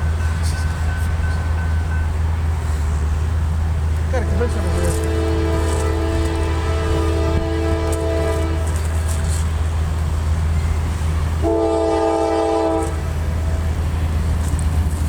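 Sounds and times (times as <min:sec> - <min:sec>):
low rumble of passing train: 0:00.0 - 0:15.0
train horn blasts: 0:04.1 - 0:09.5, 0:11.4 - 0:13.1.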